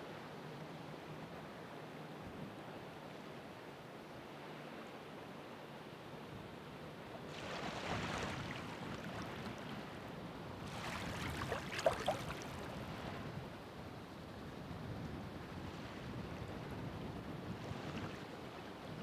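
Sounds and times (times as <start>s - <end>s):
wave splashes: 7.2s - 13.3s
ocean waves breaking: 7.3s - 13.3s.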